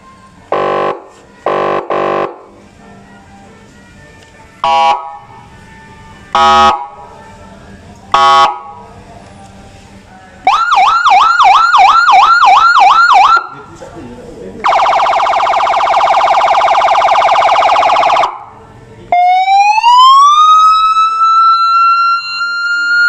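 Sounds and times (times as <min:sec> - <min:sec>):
steady horn tone: 0:00.5 - 0:02.6, 0:04.6 - 0:05.4, 0:06.3 - 0:07.2, 0:08.1 - 0:08.8
electronic siren yelp: 0:04.6 - 0:05.3, 0:06.3 - 0:07.1, 0:10.4 - 0:13.5, 0:14.6 - 0:23.0
rising siren wail: 0:04.6 - 0:05.5, 0:06.3 - 0:07.2, 0:10.4 - 0:13.5, 0:14.6 - 0:23.0.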